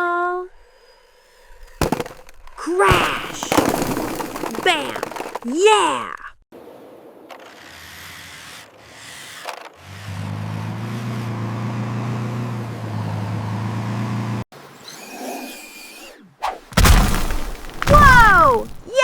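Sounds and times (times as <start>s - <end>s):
vehicle engine humming: 7.7s - 14.5s.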